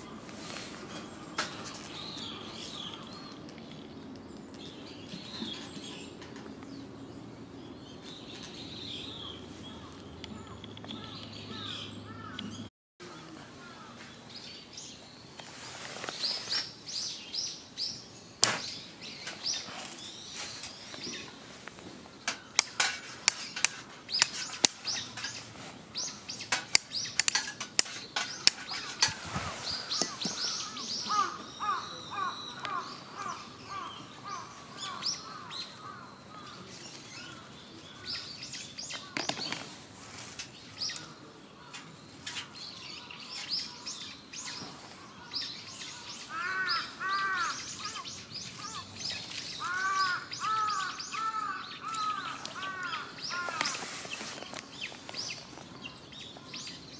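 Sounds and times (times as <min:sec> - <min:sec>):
birds chirping: 0:00.0 - 0:56.9
harsh bird calls: 0:00.0 - 0:56.9
sharp snaps: 0:26.5 - 0:29.2.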